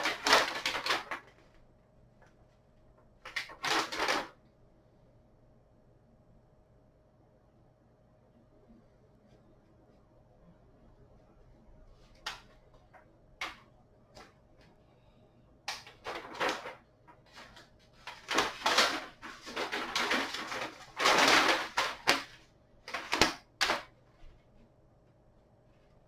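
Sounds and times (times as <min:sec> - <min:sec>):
packaging rustling: 0:00.0 - 0:01.5, 0:03.3 - 0:04.4, 0:15.7 - 0:23.9
clicks and knocks of handling: 0:15.7 - 0:23.9.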